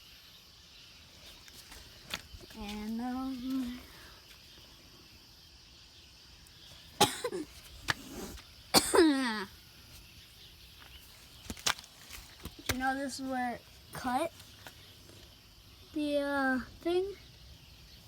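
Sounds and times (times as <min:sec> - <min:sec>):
person coughing: 0:07.0 - 0:07.5, 0:08.2 - 0:09.5.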